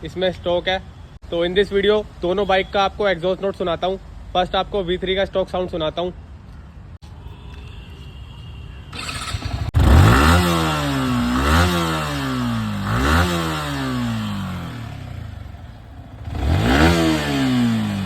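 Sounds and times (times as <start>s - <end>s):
motorcycle engine revving: 8.9s - 18.0s.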